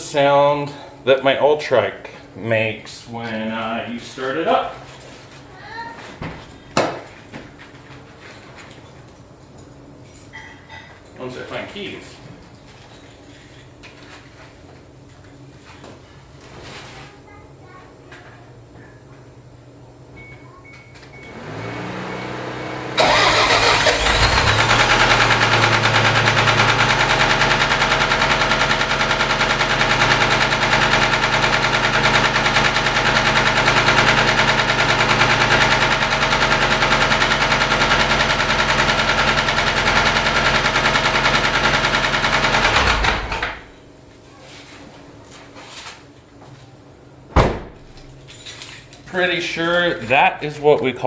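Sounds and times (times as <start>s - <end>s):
engine running with knock: 21.3s - 43.7s
starter motor cranking: 22.8s - 43.7s.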